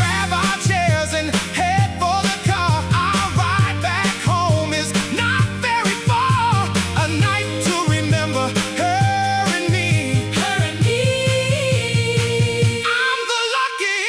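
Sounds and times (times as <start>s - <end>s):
upbeat soul music: 0.0s - 14.0s.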